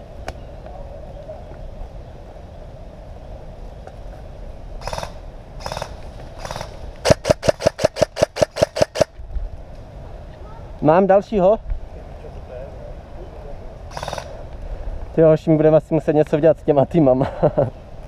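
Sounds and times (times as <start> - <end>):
airsoft guns firing: 4.8 - 9.1.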